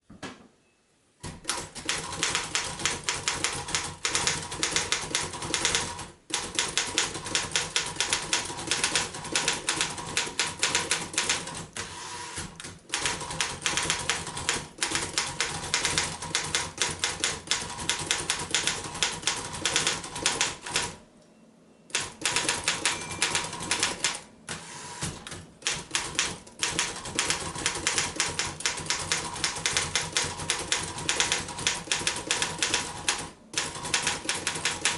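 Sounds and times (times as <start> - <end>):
manual typewriter typing fast: 1.2 - 21.0, 21.9 - 24.3, 25.0 - 34.9.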